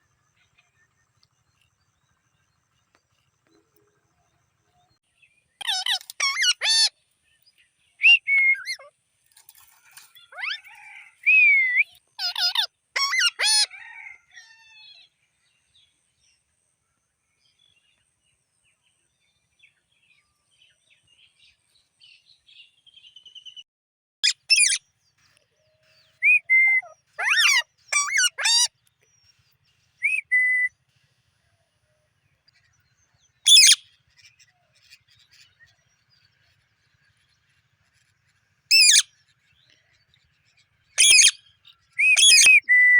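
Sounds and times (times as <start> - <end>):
parakeet squawking and whistling: 5.6 - 6.9, 11.3 - 13.7, 24.2 - 24.8, 26.2 - 28.7, 30.0 - 30.7, 33.5 - 33.8, 38.7 - 39.1, 41.0 - 41.4, 42.0 - 42.9.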